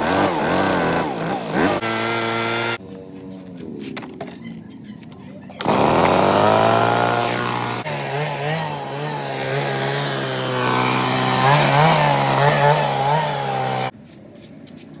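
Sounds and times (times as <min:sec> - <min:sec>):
small petrol engine revving: 0:00.0 - 0:02.9, 0:05.6 - 0:13.9.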